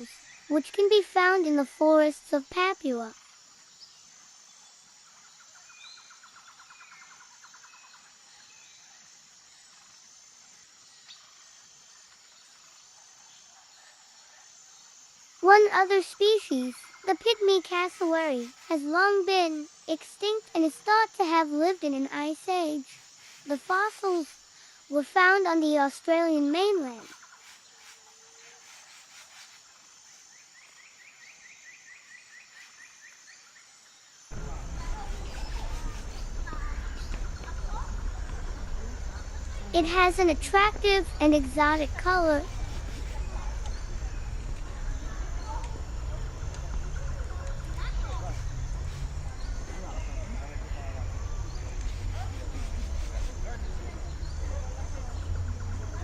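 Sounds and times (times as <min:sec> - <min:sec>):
faint nature ambience: 0:00.0 - 0:56.0
high-pitched insect drone: 0:14.7 - 0:56.0.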